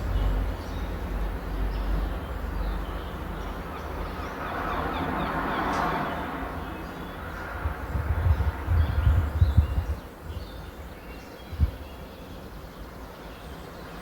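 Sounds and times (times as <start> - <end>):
birds chirping: 0.0 - 14.0
low rumble: 7.5 - 10.7.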